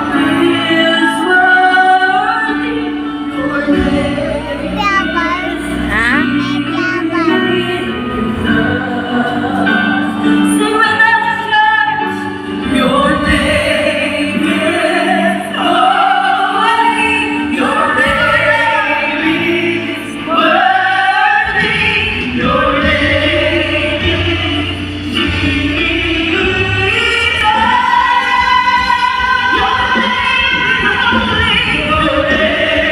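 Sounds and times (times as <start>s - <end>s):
instrumental accompaniment: 0.2s - 32.9s
choir singing sacred music: 7.6s - 11.4s, 12.6s - 32.9s.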